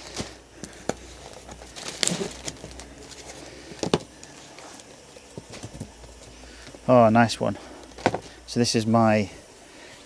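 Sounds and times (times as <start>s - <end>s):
cardboard box rustling and scraping: 0.0s - 6.6s.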